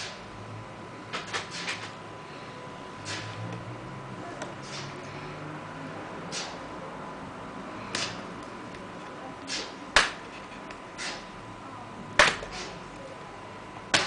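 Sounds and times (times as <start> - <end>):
sharp loud plastic clicks: 7.9 - 8.2, 12.2 - 12.7.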